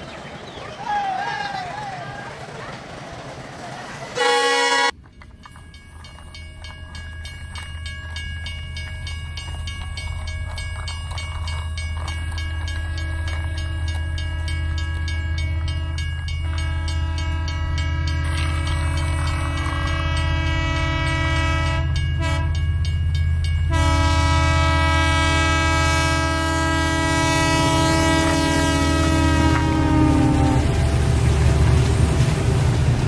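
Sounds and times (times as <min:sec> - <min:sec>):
train wheels clicking: 0:00.0 - 0:21.3
train rumbling: 0:00.0 - 0:33.0
train horn blasts: 0:04.2 - 0:05.0, 0:15.3 - 0:22.6, 0:23.7 - 0:31.0.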